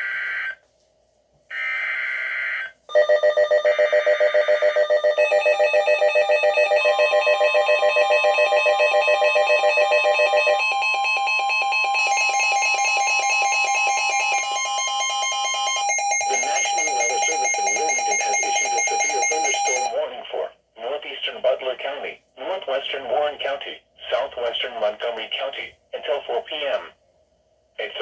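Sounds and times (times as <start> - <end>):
pulsing electronic warning alarm: 0.0 - 0.6, 1.5 - 20.0
steady high tone: 10.1 - 20.0.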